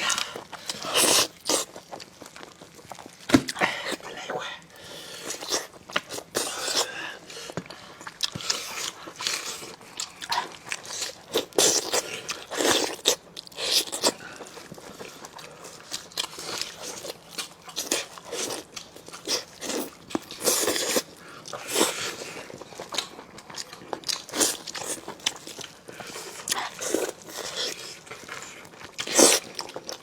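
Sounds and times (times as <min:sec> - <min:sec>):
person biting and chewing: 0:16.0 - 0:30.0.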